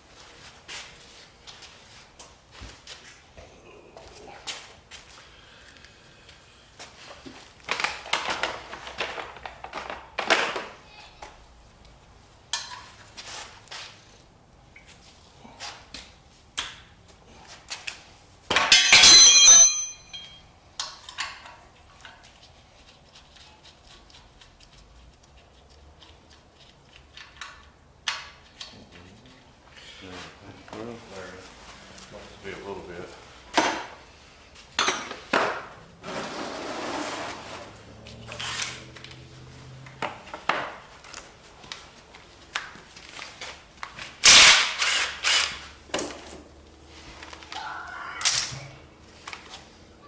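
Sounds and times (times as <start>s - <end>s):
tools and engine parts clanking: 12.5s - 13.1s, 18.5s - 22.3s, 26.9s - 28.9s, 33.1s - 41.5s, 48.2s - 49.7s
ringing metallic clatter: 18.7s - 20.4s.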